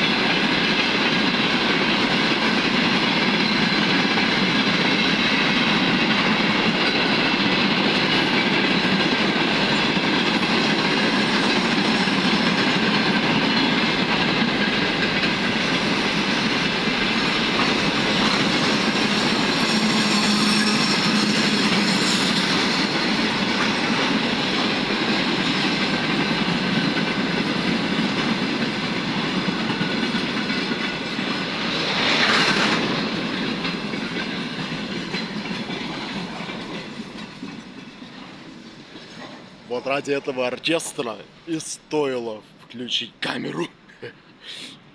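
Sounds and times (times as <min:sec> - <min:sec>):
wheels clattering over rail joints: 0:00.0 - 0:39.6
freight train rolling past: 0:00.0 - 0:43.2.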